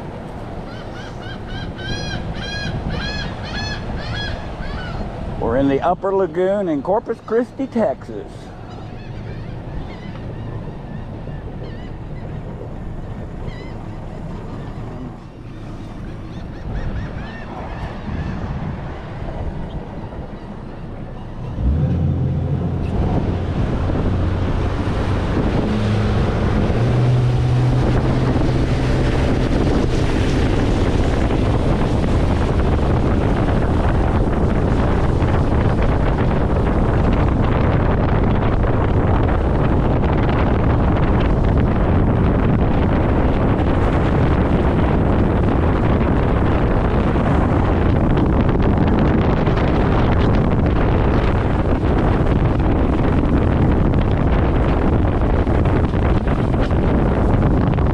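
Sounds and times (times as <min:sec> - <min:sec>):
outboard boat motor running: 0:00.0 - 0:57.9
wind and water rushing: 0:00.0 - 0:57.9
water rushing: 0:18.0 - 0:37.7.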